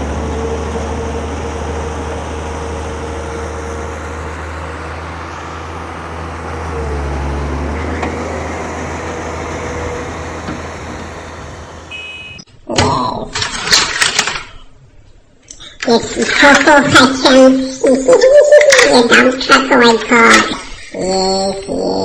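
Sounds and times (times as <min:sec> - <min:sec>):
vehicle engine running: 0:00.0 - 0:12.4
short electronic beep: 0:11.9 - 0:12.5.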